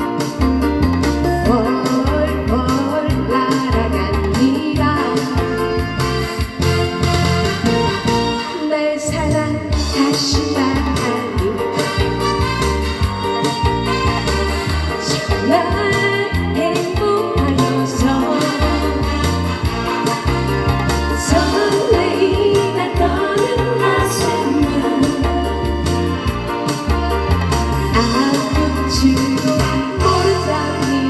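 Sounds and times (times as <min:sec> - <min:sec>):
electronic keyboard: 0:00.0 - 0:31.0
steady bass beat: 0:02.5 - 0:08.5, 0:24.0 - 0:31.0
trot music: 0:04.0 - 0:16.0, 0:23.8 - 0:31.0.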